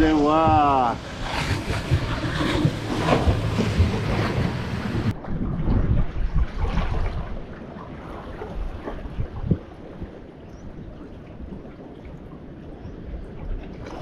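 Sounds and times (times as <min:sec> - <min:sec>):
surf breaking against rocks: 0:00.0 - 0:06.0
wind buffeting microphone: 0:00.0 - 0:14.0.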